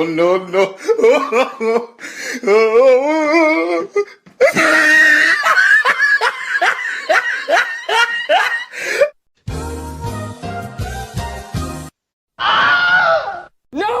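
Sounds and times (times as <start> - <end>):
person laughing: 4.4 - 9.1.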